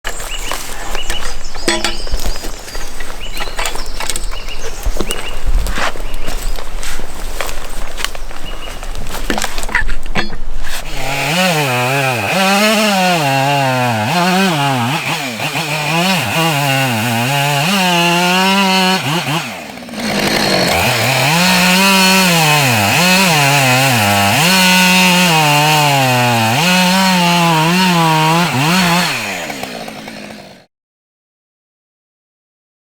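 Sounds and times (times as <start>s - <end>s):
chainsaw cutting through log: 0.1s - 8.5s, 10.6s - 30.7s.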